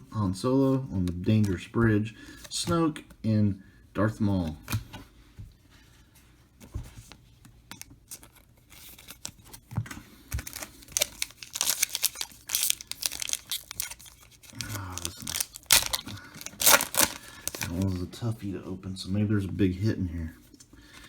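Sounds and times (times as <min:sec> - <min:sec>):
foil wrapper tearing and crinkling: 0:10.4 - 0:17.9.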